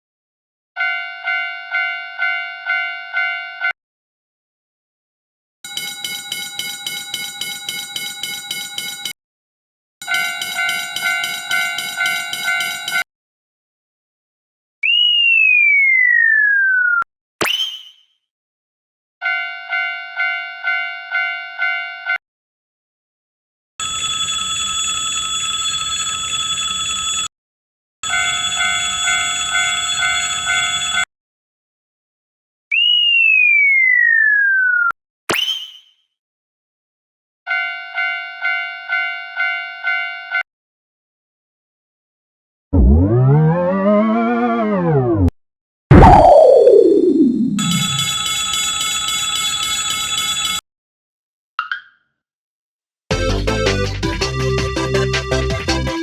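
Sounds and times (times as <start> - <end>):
high-pitched crossing bell: 10.0 - 13.0, 47.6 - 50.6
lower-pitched crossing bell: 10.0 - 13.0, 47.6 - 50.6
falling cartoon whistle: 14.8 - 18.0, 32.7 - 35.8, 45.9 - 48.0.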